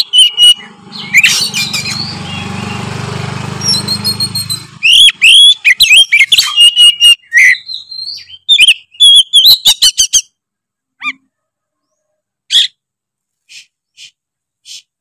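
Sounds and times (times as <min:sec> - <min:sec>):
bird singing whistled notes: 0:00.0 - 0:02.9, 0:03.6 - 0:10.4.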